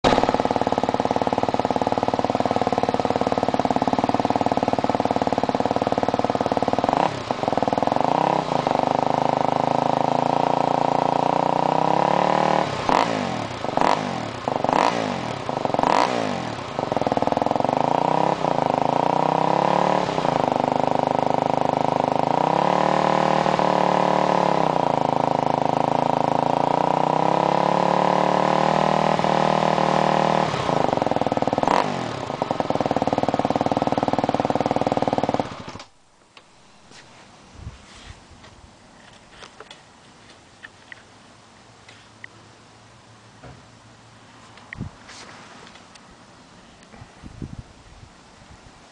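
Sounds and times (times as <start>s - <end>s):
motorcycle engine idling and revving: 0.0s - 36.0s.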